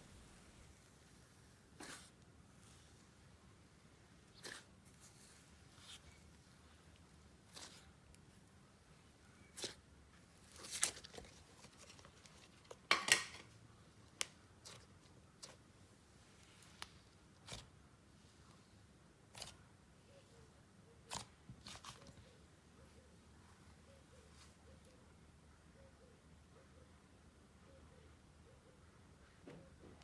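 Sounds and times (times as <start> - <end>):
slime clicking and squishing: 4.3 - 5.0, 7.4 - 8.3, 9.4 - 9.9, 14.1 - 15.7, 21.0 - 22.2.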